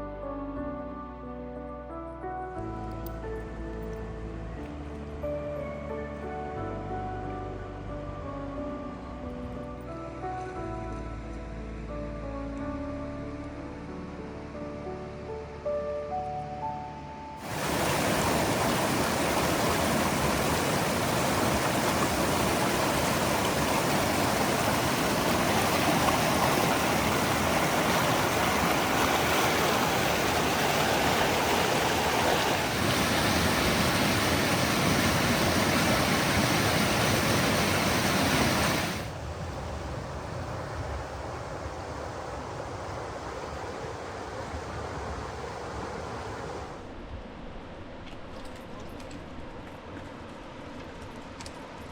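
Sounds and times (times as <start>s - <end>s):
rushing whitewater: 17.4s - 46.8s.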